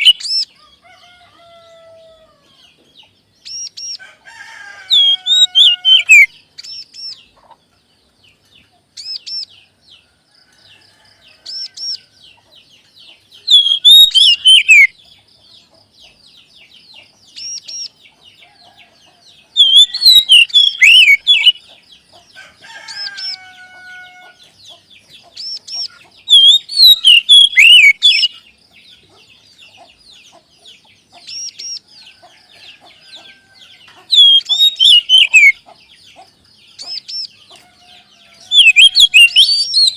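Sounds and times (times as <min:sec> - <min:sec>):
bird whistled song: 0:00.0 - 0:00.5, 0:03.4 - 0:04.0, 0:04.9 - 0:07.3, 0:09.0 - 0:09.6, 0:13.0 - 0:15.0, 0:17.3 - 0:18.0, 0:19.5 - 0:21.8, 0:24.2 - 0:28.4, 0:31.2 - 0:31.9, 0:33.1 - 0:35.7, 0:38.0 - 0:39.9.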